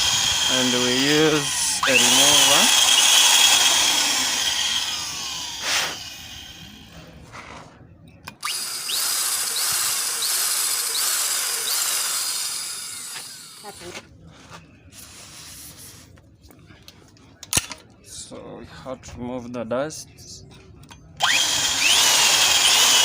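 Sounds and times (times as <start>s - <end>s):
drill click: 0.0s - 6.6s, 8.2s - 13.7s, 21.2s - 23.0s
electric drill boring into metal: 0.0s - 6.9s, 8.4s - 13.8s, 21.2s - 23.0s.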